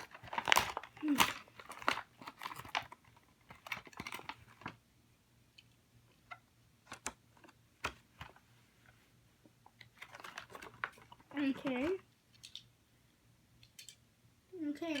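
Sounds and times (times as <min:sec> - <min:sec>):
packaging clicks and crinkles: 0:00.0 - 0:04.8, 0:09.7 - 0:12.7.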